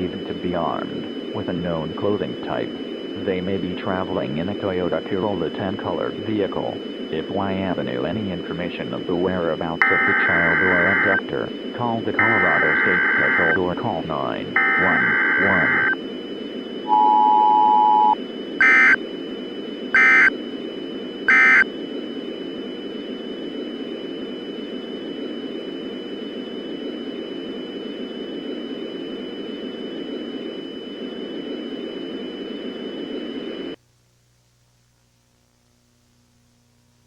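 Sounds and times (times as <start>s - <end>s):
static hiss: 0.0s - 16.9s, 17.7s - 37.0s
faint high whine: 0.0s - 33.8s
digital data bursts: 0.4s - 16.0s.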